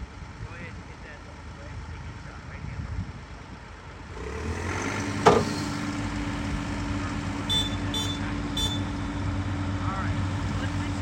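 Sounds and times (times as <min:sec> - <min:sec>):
excavator diesel engine running: 0:03.6 - 0:11.0.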